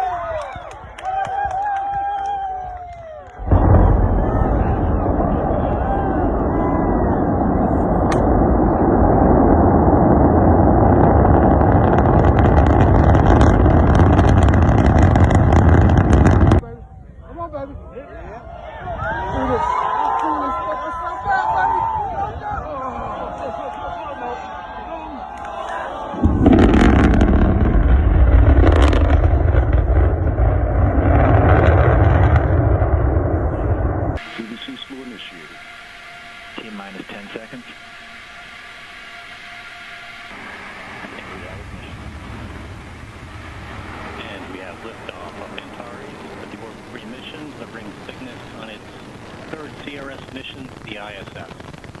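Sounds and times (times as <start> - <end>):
rocket engine rumble: 0.0 - 18.0, 25.6 - 52.0
rocket engine crackling: 1.6 - 16.6, 26.1 - 52.0
brief crackle: 8.0 - 8.4, 39.5 - 52.0.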